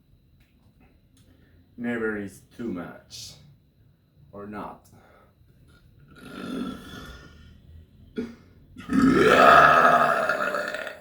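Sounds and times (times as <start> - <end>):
person burping: 6.1 - 7.4, 8.2 - 11.0.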